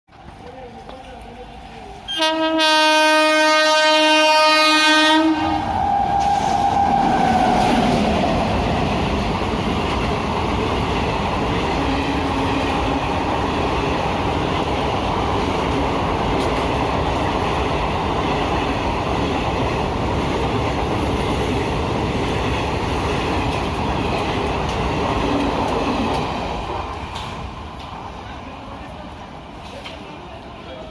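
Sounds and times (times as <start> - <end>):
train wheels rumbling on rails: 0.1 - 30.9
locomotive horn: 2.1 - 7.1
higher horn tone sliding down: 2.1 - 8.1.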